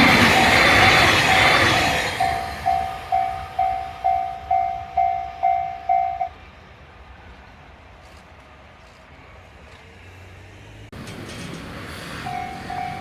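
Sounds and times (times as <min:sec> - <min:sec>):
level crossing bell ringing: 0:00.0 - 0:06.3, 0:12.3 - 0:13.0
train rumble: 0:00.0 - 0:13.0.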